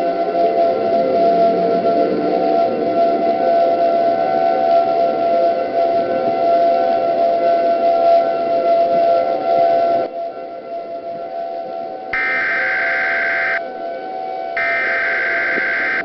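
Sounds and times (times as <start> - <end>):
siren steady tone: 12.2 - 16.0.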